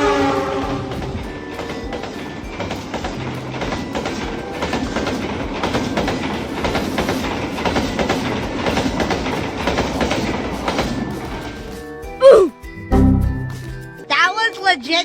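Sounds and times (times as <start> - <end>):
train wheels clattering on rails: 0.0 - 12.0.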